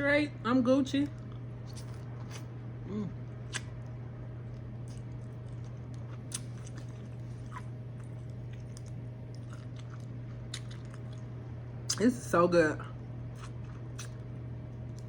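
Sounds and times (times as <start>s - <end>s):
steady low hum: 0.0s - 15.0s
chewing and lip-smacking: 1.0s - 2.6s, 3.3s - 11.3s, 13.3s - 15.0s.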